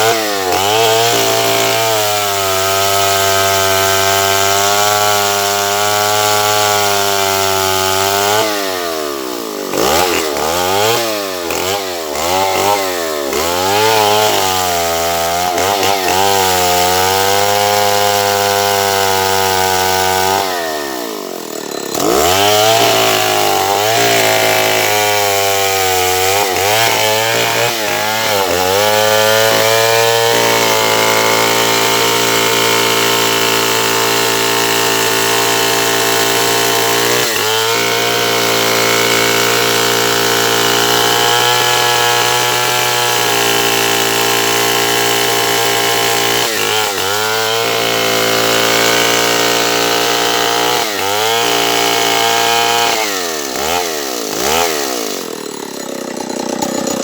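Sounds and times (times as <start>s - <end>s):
chainsaw cutting wood: 0.0s - 57.0s.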